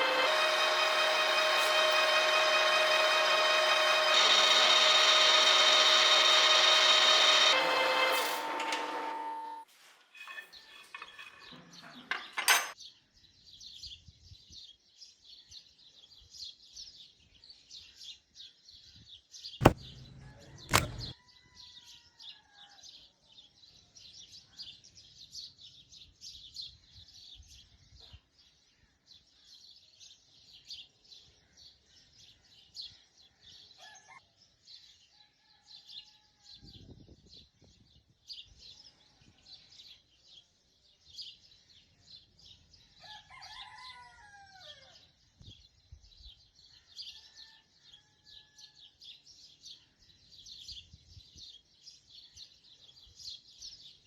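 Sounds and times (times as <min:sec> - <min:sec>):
sharp knocks: 0:19.6 - 0:21.1.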